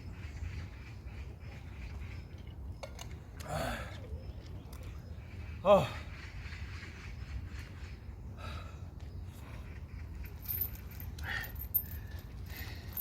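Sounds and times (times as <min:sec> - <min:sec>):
light clinks: 0:10.2 - 0:13.0.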